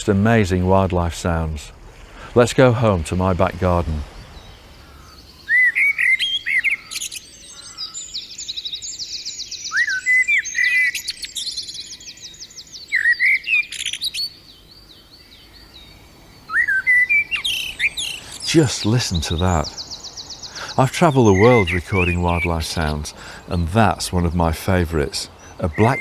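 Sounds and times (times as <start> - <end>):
blackbird singing: 2.5 - 26.0.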